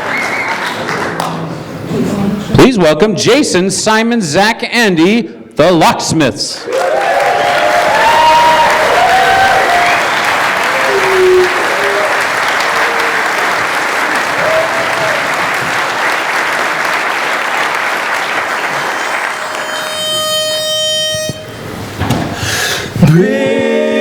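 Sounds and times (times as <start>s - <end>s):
audience applause: 0.0s - 1.4s, 6.6s - 20.1s
pitch pipe note: 18.2s - 22.0s
men singing a cappella: 23.0s - 24.0s.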